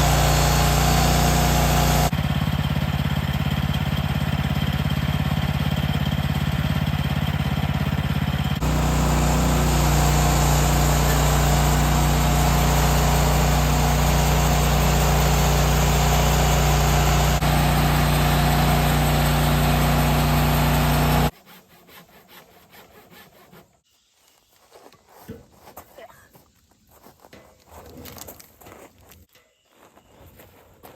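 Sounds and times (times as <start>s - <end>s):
band blade cutting log: 0.0s - 2.1s, 8.6s - 23.8s
sawmill engine running: 0.0s - 21.3s.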